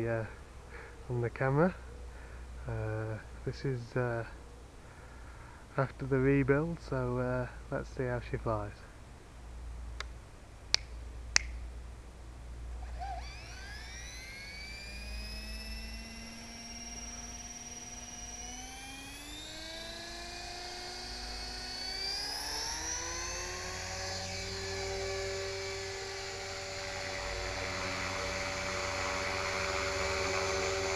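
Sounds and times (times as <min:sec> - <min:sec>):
rc helicopter motor whine: 0:12.8 - 0:30.9.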